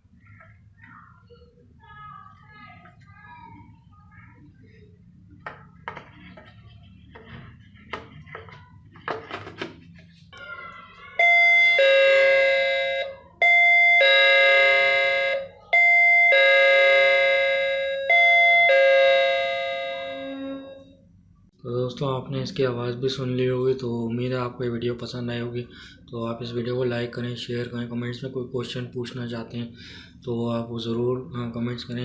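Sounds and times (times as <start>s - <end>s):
doorbell ding-dong chime: 15.8s - 20.9s.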